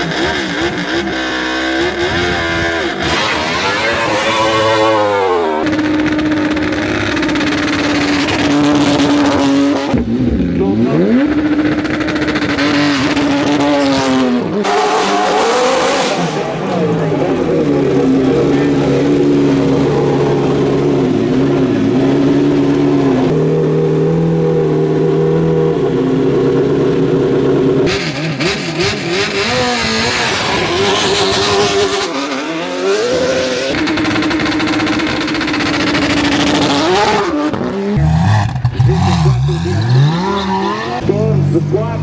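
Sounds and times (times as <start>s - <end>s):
race car engine revving: 0.0s - 42.0s.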